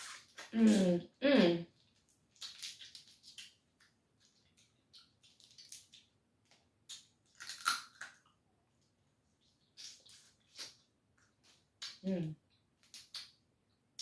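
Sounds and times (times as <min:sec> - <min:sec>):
crab shells cracking: 0:06.9 - 0:08.2.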